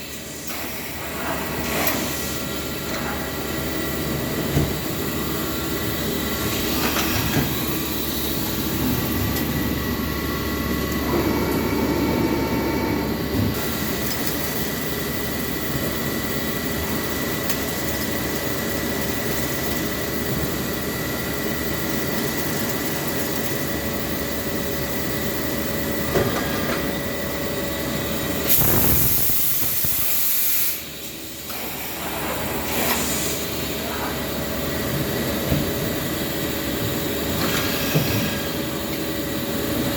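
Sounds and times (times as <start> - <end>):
lathe humming with high whine: 0.0 - 28.9
hiss: 28.5 - 30.9.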